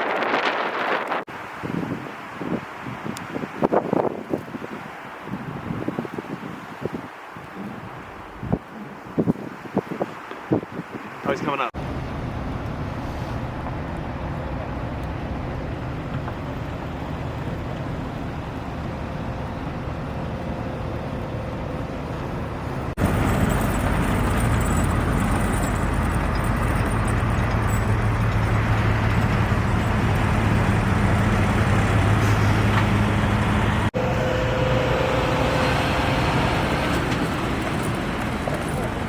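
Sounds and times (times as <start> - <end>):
traffic noise: 0.0 - 39.0
low engine hum: 11.8 - 39.0.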